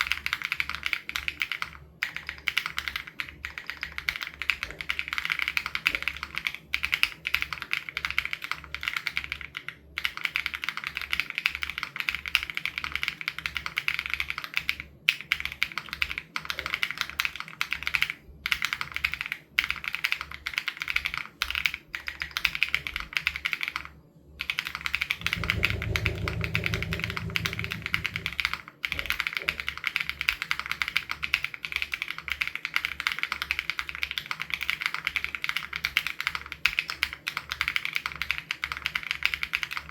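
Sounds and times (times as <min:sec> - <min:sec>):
mechanical keyboard typing: 0:00.0 - 0:39.9
low hum: 0:24.9 - 0:28.6.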